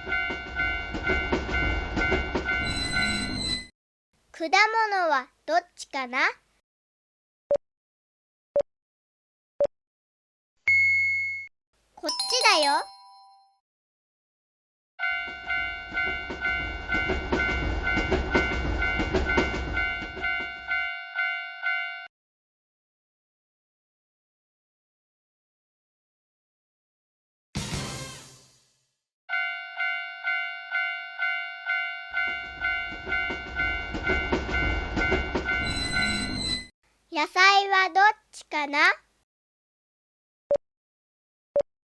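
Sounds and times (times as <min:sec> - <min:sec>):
train rumbling with clacking wheels: 0:00.0 - 0:03.4, 0:15.2 - 0:20.8, 0:32.2 - 0:36.5
railroad crossing bell clanging: 0:00.0 - 0:03.6, 0:15.0 - 0:22.1, 0:29.3 - 0:36.7.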